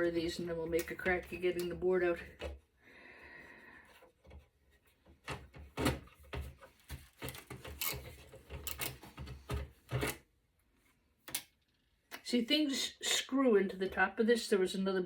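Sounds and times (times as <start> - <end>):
screwdriver on metal chassis: 7.2 - 9.1.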